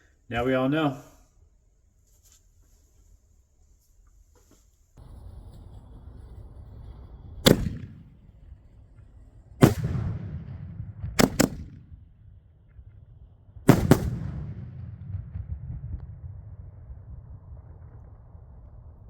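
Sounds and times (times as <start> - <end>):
firework shells bursting: 5.0 - 12.9, 13.7 - 15.6
rolling echo: 5.0 - 19.0.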